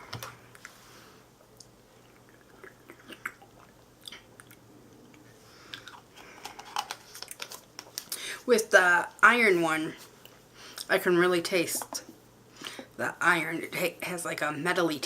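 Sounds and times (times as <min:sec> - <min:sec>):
low steady hum: 0:00.0 - 0:15.0
mouth clicks and smacks: 0:01.4 - 0:06.1.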